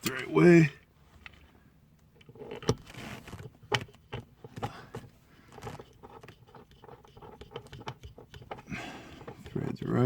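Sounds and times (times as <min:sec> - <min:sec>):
seatbelt hardware clicks and knocks: 0:02.2 - 0:09.7.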